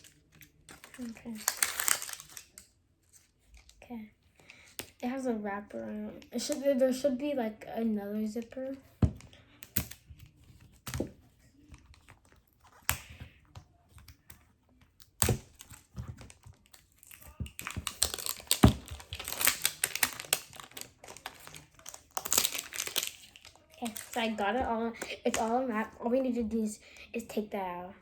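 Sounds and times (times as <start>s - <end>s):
plastic wrapper crinkling: 0.0s - 3.8s, 15.2s - 26.0s.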